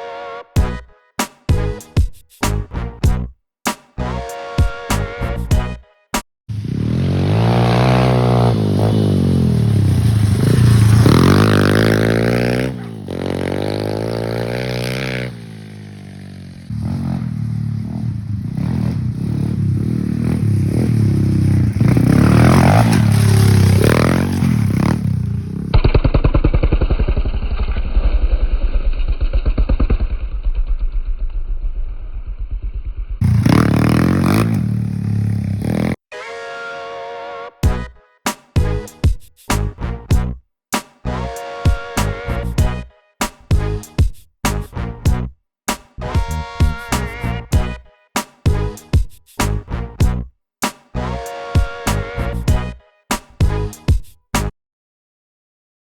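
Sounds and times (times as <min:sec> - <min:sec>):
motorbike engine revving: 0:06.5 - 0:30.5, 0:32.8 - 0:36.0.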